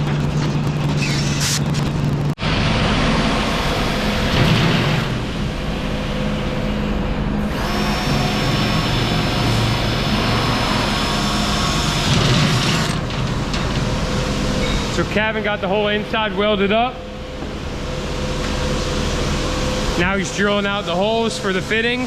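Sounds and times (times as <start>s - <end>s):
high machine whine: 0.0s - 22.0s
power tools running: 7.4s - 13.1s.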